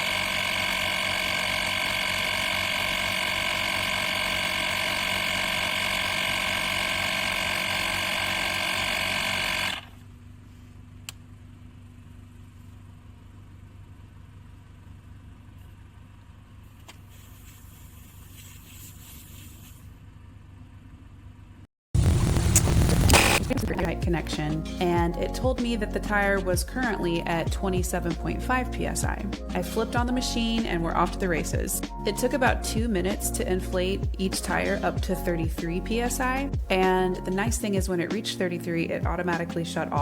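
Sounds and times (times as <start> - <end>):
tire inflator motor whine: 0.0 - 10.8.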